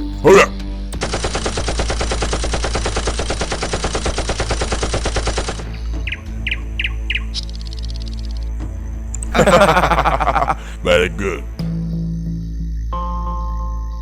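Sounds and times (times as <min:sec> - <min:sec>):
automatic machine-gun fire: 0:01.0 - 0:05.7.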